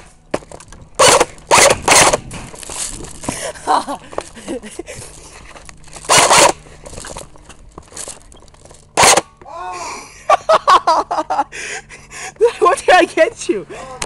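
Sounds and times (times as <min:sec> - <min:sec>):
person crying out: 0:09.4 - 0:10.2.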